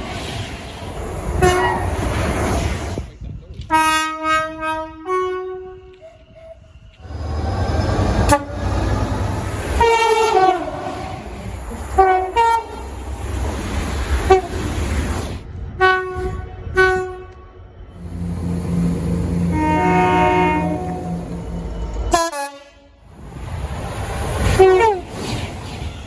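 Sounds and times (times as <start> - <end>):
low rumble of moving train: 0.0 - 26.0
train two-tone horn blasts: 1.4 - 2.0, 3.6 - 11.3, 12.0 - 12.9, 15.8 - 23.0, 24.5 - 25.1.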